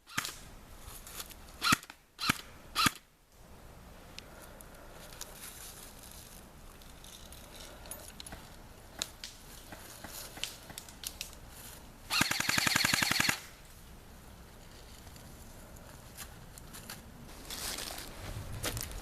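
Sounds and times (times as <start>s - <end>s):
airsoft gun full-auto burst: 12.1s - 13.5s.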